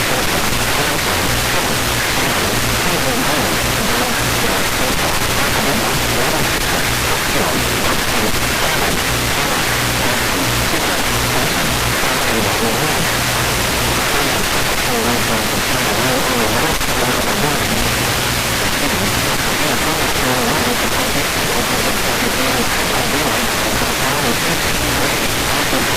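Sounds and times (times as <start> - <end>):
faint indistinct speech: 0.0 - 13.2, 14.0 - 25.9
radio static hiss: 0.0 - 25.9.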